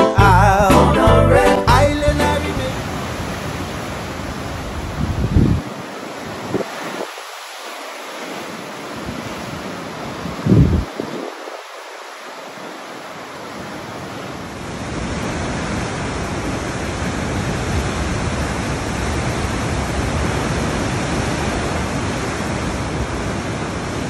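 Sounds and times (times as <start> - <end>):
steady rushing noise: 2.6 - 24.0.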